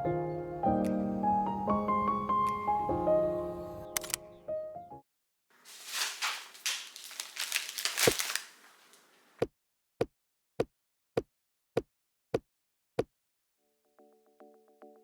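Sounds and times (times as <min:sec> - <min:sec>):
crinkling and rustling: 0:05.6 - 0:09.4.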